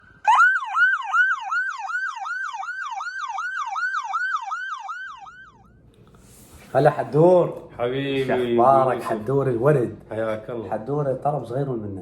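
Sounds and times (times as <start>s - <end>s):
emergency siren yelping: 0.0s - 5.8s.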